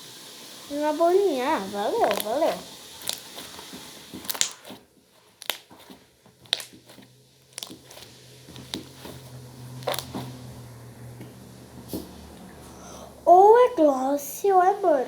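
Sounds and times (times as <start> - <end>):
slime squishing: 0.7 - 10.7
slime clicking pops: 2.0 - 9.1, 9.8 - 10.2.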